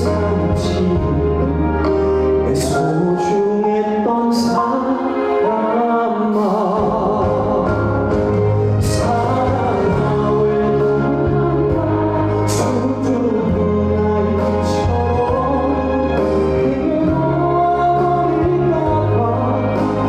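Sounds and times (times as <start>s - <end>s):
person singing: 0.0s - 20.0s
backing track with bass line: 6.5s - 20.0s.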